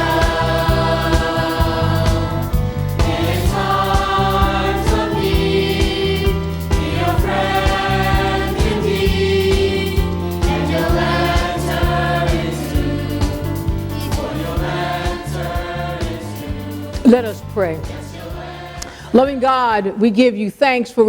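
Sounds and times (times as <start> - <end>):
group of voices singing: 0.0 - 20.0
steady beat: 17.0 - 18.1.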